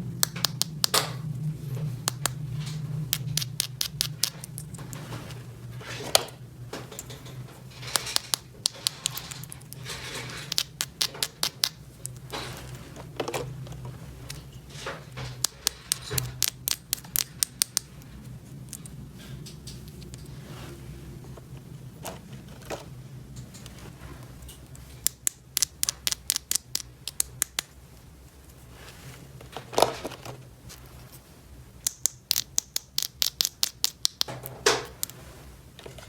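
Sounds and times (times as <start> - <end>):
steady low hum: 0.0 - 36.0
plastic toy pieces clicking: 7.9 - 12.3, 15.4 - 17.9, 25.0 - 27.7, 31.8 - 35.2.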